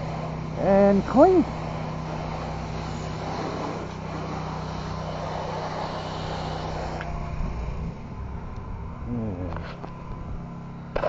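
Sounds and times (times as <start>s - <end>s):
water spray hissing: 0.0s - 8.0s
motor humming: 0.0s - 11.0s.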